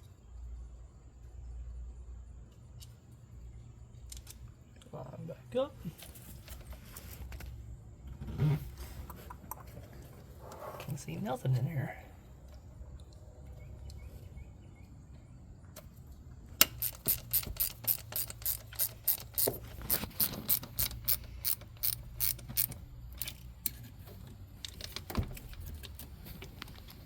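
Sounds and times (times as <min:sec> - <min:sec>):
hand ratchet clicking: 0:16.6 - 0:23.8.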